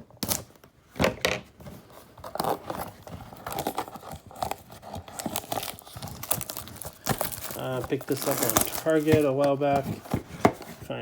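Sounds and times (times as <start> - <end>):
wrapping and cardboard crinkling: 1.5 - 11.0
packaging being torn open: 3.4 - 9.6.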